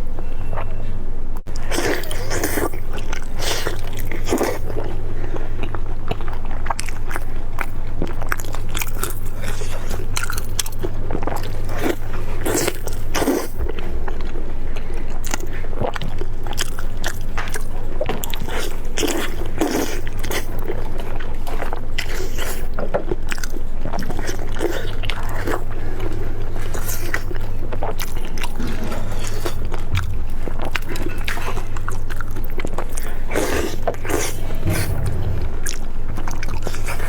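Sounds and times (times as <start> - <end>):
steady low hum: 33.8 - 36.6.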